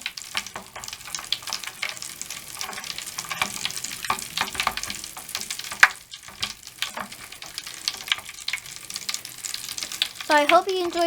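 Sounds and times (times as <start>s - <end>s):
bath crackles popping in water: 0.0s - 11.0s.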